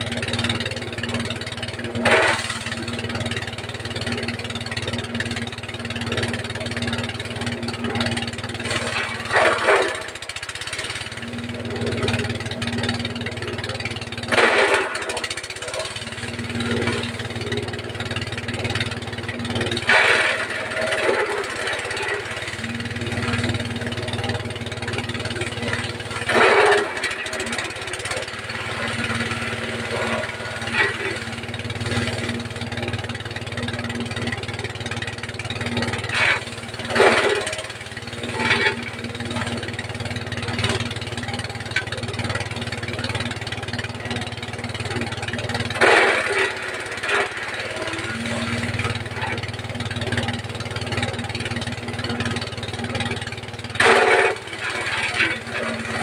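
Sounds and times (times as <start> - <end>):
small diesel engine running: 0.0 - 56.0
chopper machine chopping bursts: 2.0 - 2.8, 14.3 - 15.9, 19.8 - 22.8, 25.4 - 31.3, 36.1 - 39.5, 45.7 - 48.9, 53.7 - 56.0.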